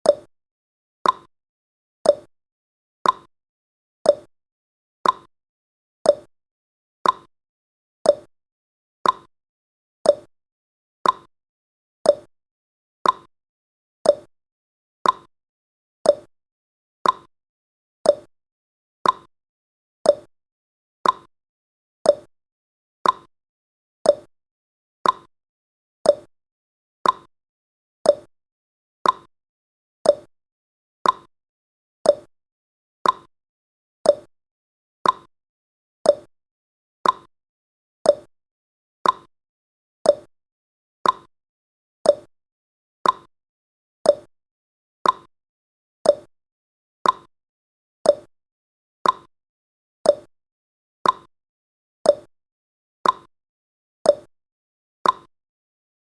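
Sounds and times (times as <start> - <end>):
countdown timer ticking: 32.1 - 32.3, 34.1 - 34.3, 36.1 - 36.3, 38.1 - 38.3, 40.1 - 40.3, 42.1 - 42.3, 44.1 - 44.3, 46.1 - 46.3, 48.1 - 48.3, 49.0 - 49.3, 50.1 - 50.3.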